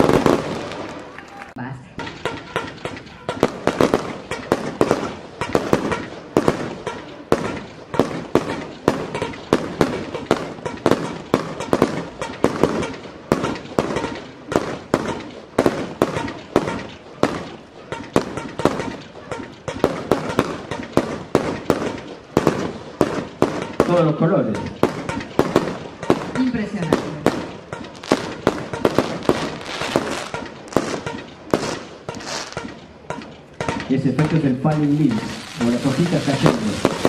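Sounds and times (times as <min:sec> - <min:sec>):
fireworks bangs: 0:00.0 - 0:37.0.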